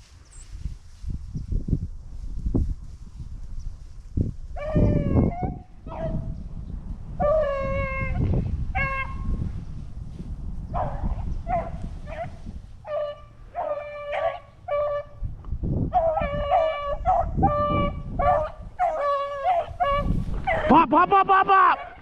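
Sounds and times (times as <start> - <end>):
low rumble of wind on microphone: 0.0 - 21.0
hounds baying: 4.6 - 6.4, 7.2 - 9.4, 10.7 - 15.2, 15.9 - 20.8, 21.6 - 22.0.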